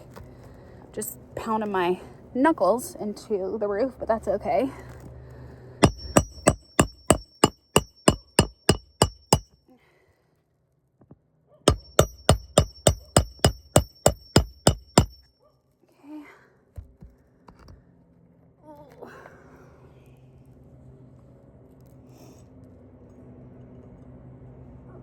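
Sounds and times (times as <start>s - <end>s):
hammer ringing on metal: 5.8s - 9.5s, 11.7s - 15.3s.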